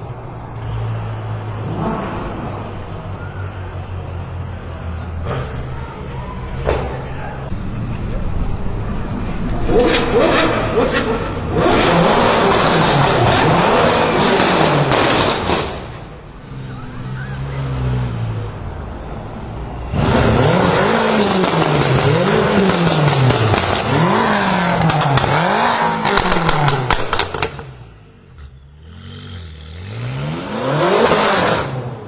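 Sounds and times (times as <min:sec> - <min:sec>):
car engine revving: 0:00.1 - 0:32.0
exhaust crackles and pops: 0:02.8 - 0:16.1, 0:20.0 - 0:27.9.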